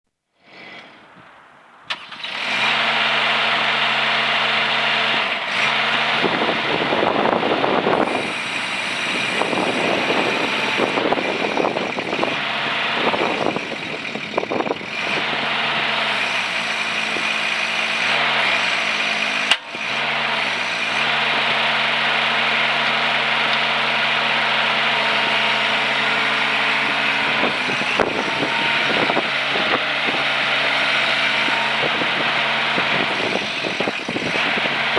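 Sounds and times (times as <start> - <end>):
small excavator engine running: 1.9 - 34.9.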